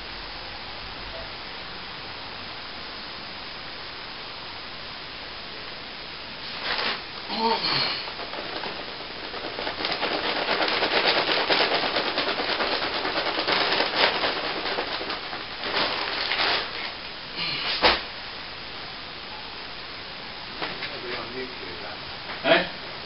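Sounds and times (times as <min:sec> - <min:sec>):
rough crackly scraping: 0:06.4 - 0:18.0.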